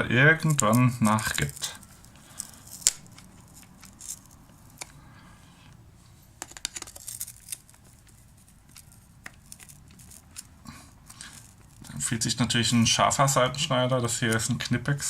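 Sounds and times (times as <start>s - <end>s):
pliers clicking and scraping metal: 0.4s - 5.0s, 6.4s - 12.0s.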